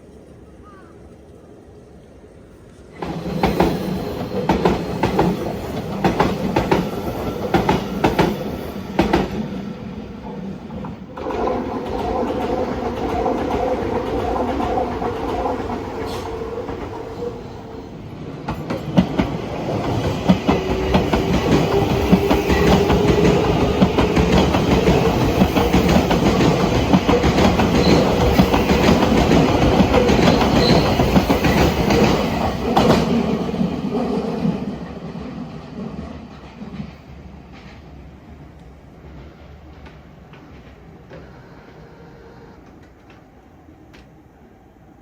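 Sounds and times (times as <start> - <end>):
train wheels clacking on rails: 3.0 - 35.0.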